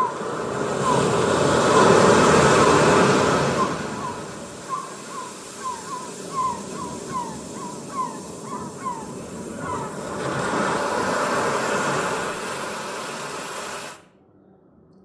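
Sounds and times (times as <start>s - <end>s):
bird calling falling notes: 0.0s - 10.1s
sea waves: 0.0s - 14.1s.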